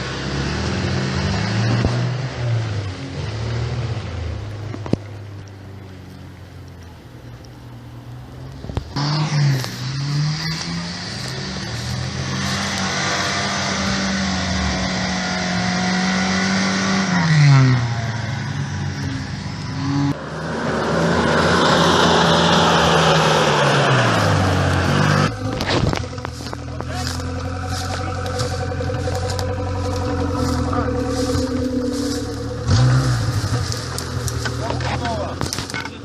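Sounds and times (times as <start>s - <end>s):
engine revving hard: 9.0s - 18.5s, 19.7s - 35.3s.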